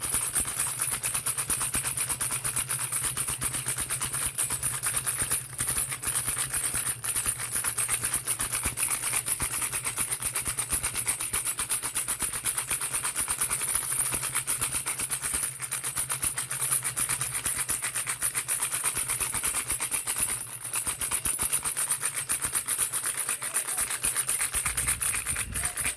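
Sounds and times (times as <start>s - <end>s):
baby rattle shaken: 0.0s - 25.9s.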